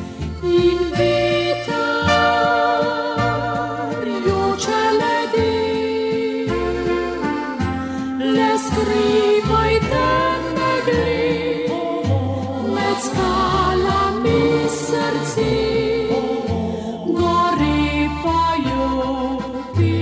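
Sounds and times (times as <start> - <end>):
choir singing with instruments: 0.0 - 20.0.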